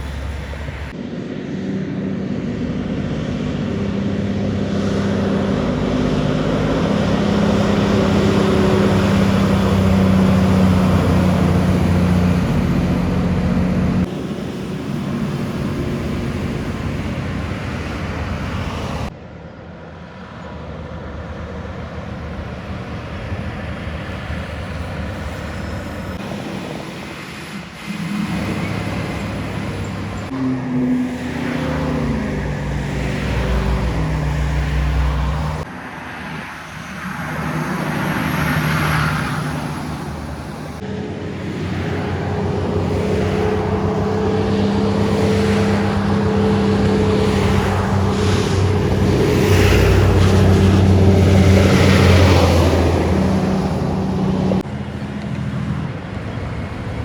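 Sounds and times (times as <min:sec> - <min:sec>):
tyre and road noise: 0:00.0 - 0:19.2, 0:21.4 - 0:57.0
diesel trucks shifting gears: 0:04.9 - 0:14.1, 0:27.9 - 0:57.0.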